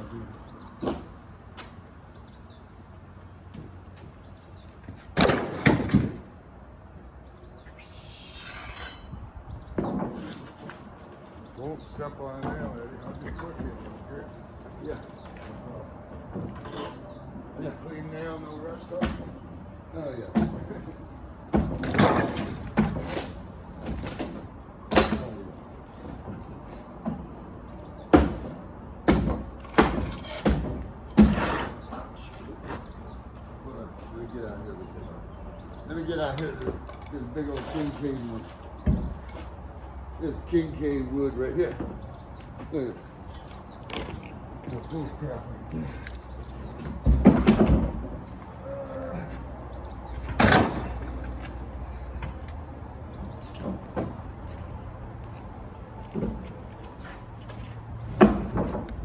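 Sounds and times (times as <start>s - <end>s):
wooden boards knocking and banging: 4.9s - 6.3s, 9.7s - 14.1s, 15.0s - 17.4s, 19.0s - 19.4s, 20.3s - 31.9s, 46.6s - 48.4s, 50.2s - 51.6s, 53.3s - 54.5s, 56.1s - 59.0s
hissing scrape: 7.8s - 9.1s.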